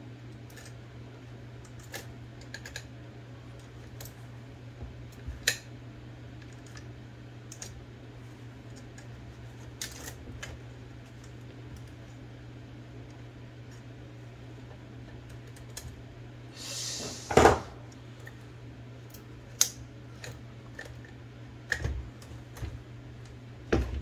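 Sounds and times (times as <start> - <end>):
steady low hum: 0.0 - 24.0
short hiss: 16.6 - 17.6.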